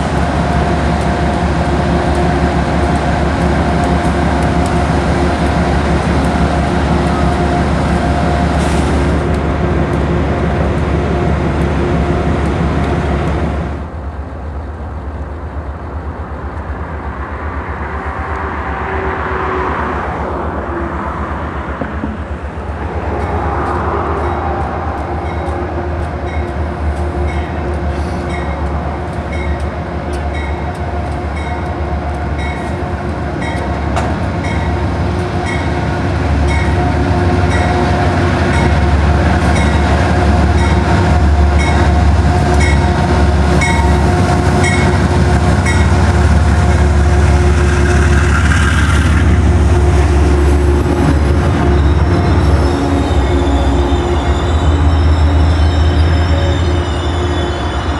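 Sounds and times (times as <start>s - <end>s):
train rumble and engine: 0.0s - 57.9s.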